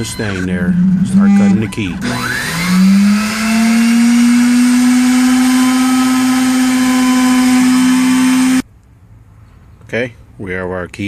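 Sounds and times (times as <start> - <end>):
key-cutting machine motor whine: 0.0 - 8.6.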